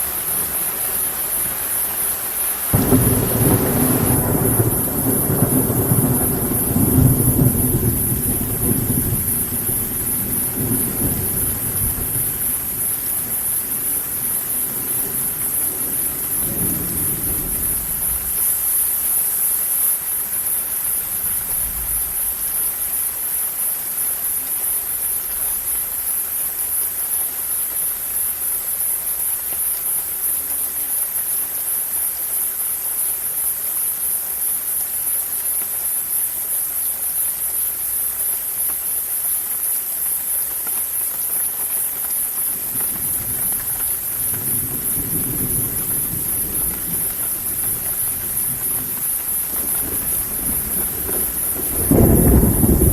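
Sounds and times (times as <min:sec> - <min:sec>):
thunder rumble: 0:00.0 - 0:18.8, 0:42.0 - 0:52.9
steady rain falling: 0:00.0 - 0:52.9.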